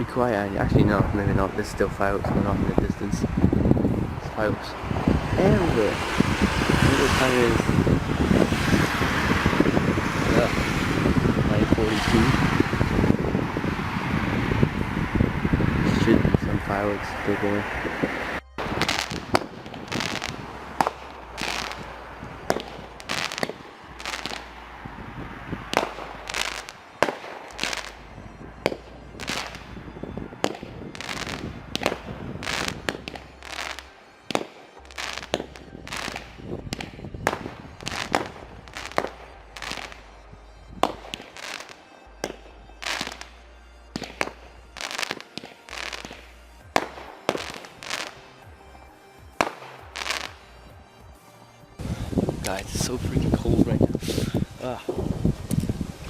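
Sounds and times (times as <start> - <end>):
fireworks bangs and cracks: 18.6 - 24.5, 25.7 - 28.0, 28.6 - 40.0, 40.8 - 43.3, 44.0 - 46.2, 46.8 - 48.2, 49.4 - 50.4.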